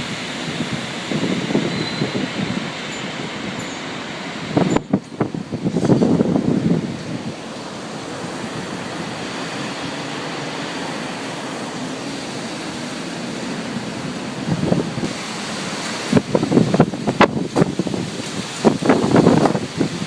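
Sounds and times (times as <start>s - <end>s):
strong storm wind rushing: 0.0s - 20.0s
wind buffeting microphone: 0.0s - 20.0s.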